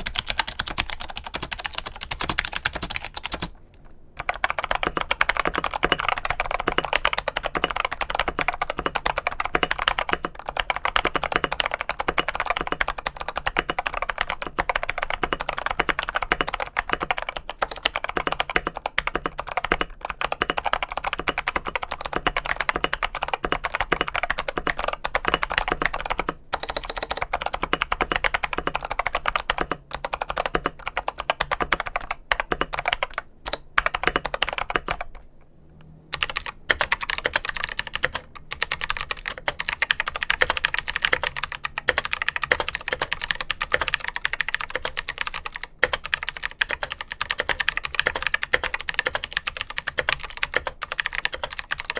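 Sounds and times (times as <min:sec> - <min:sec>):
typing on clicky mechanical keyboard: 0:00.0 - 0:35.3, 0:36.1 - 0:51.9.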